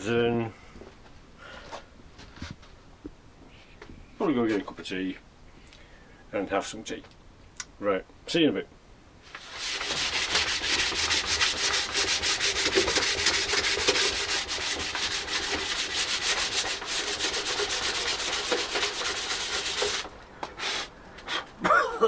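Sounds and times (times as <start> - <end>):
short scrapes: 9.2 - 21.5
sandpaper rubbing back and forth: 9.3 - 21.4.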